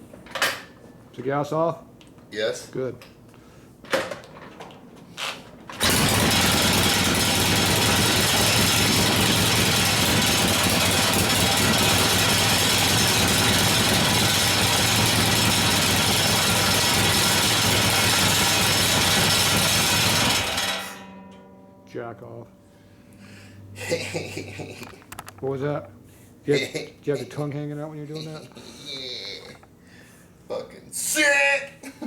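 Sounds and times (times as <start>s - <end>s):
motorcycle engine kick starting: 5.8s - 21.0s
motorcycle engine running loud: 5.8s - 21.0s.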